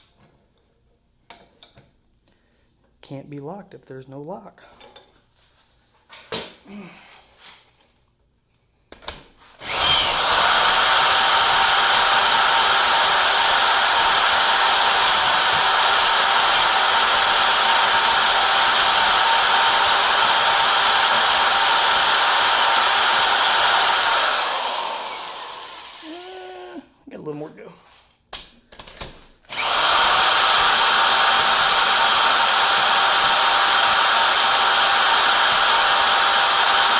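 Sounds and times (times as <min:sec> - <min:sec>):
drill whining through metal: 0:09.6 - 0:26.8, 0:29.5 - 0:36.9.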